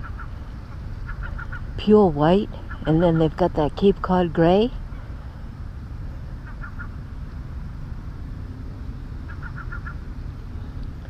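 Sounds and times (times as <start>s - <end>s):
gulls calling: 0.0s - 5.4s, 6.2s - 7.2s, 9.2s - 10.2s
steady low rumble: 0.0s - 11.0s.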